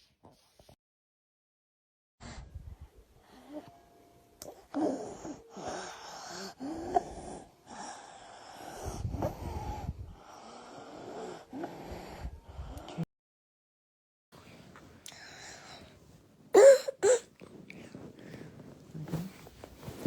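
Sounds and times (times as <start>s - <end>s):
child breathing with wheezy stridor: 4.5s - 13.0s, 15.1s - 16.0s, 16.6s - 17.3s.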